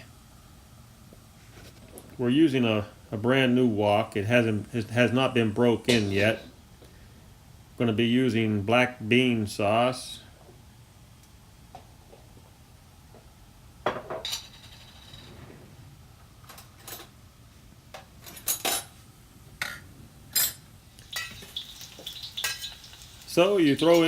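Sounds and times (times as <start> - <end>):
utensils clinking against dishes: 19.6 - 24.0.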